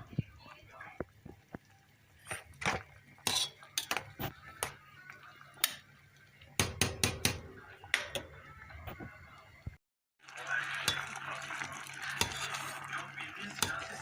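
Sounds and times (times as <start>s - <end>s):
utensils clinking against dishes: 3.3s - 4.1s.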